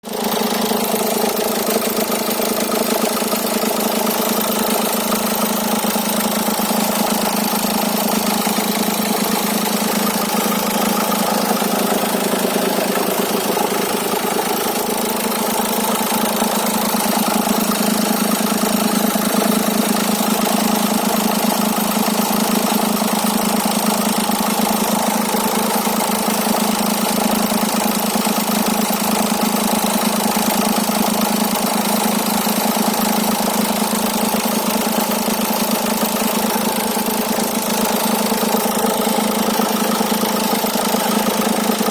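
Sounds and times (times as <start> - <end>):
diesel engine idling: 0.0 - 41.9.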